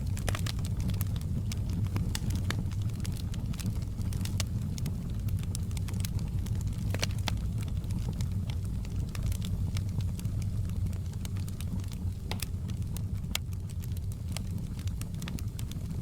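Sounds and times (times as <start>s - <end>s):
wood fire crackling: 0.0s - 16.0s
sharp pops of fire: 0.1s - 7.5s, 11.1s - 14.1s.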